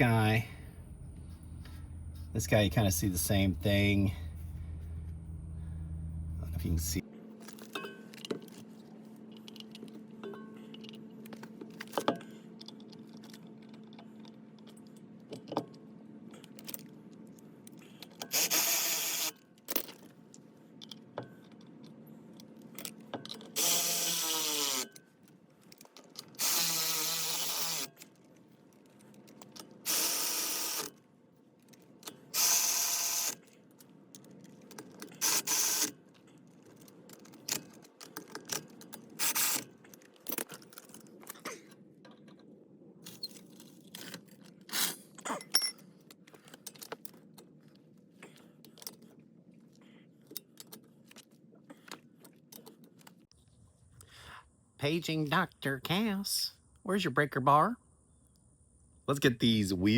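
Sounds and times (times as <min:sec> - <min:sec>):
metallic clinks of tools: 0:45.2 - 0:45.8.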